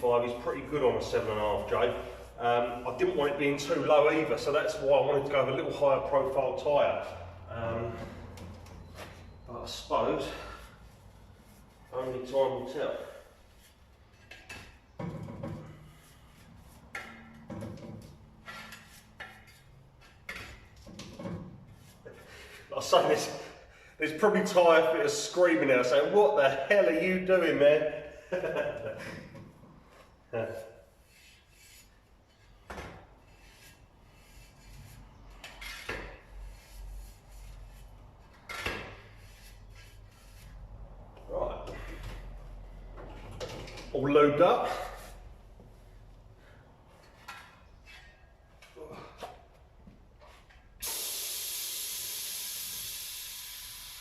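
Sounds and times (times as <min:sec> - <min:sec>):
brush scrubbing a tyre: 0:33.2 - 0:35.4.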